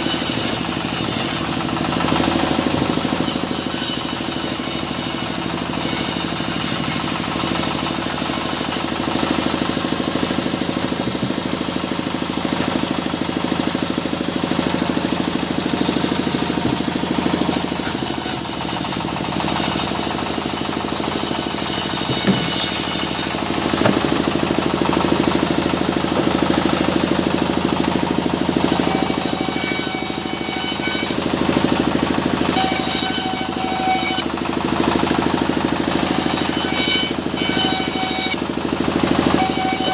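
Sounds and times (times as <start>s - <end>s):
saw blade hissing through wood: 0.0s - 31.3s
sawmill running with mechanical pulsing: 0.0s - 39.9s.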